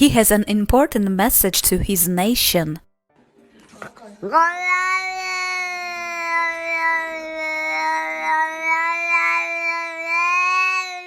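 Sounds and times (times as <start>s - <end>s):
cat yowling: 4.3s - 11.0s.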